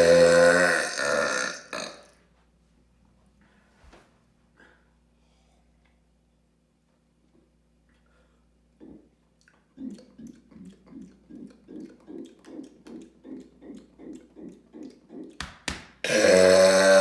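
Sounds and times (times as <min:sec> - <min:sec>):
person gulping soda: 0:08.8 - 0:15.4.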